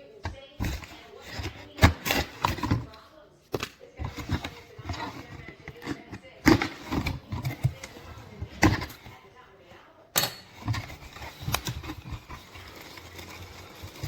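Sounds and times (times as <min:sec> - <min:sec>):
metal kettle lid clanking: 0:10.2 - 0:10.8.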